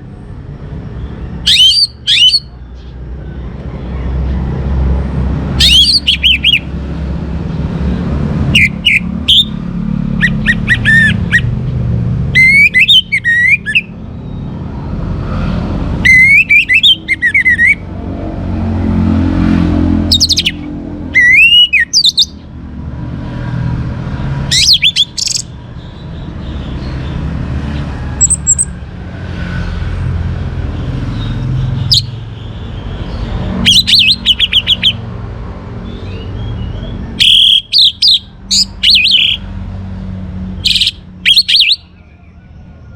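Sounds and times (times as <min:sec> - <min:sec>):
thrush singing: 0:05.3 - 0:11.6.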